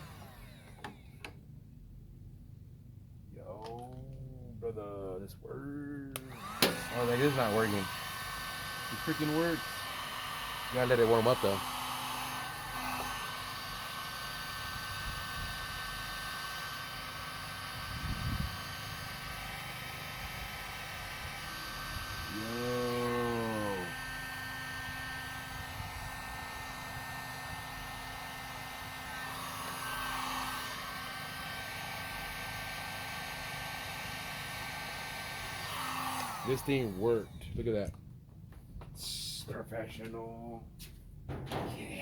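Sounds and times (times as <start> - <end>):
heat gun fan hum: 0.0 - 1.5, 6.0 - 37.9
low thump: 41.2 - 41.9.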